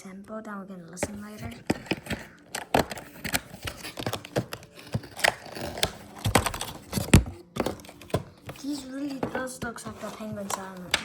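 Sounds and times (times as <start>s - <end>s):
packaging scraping and rustling: 1.0s - 11.0s.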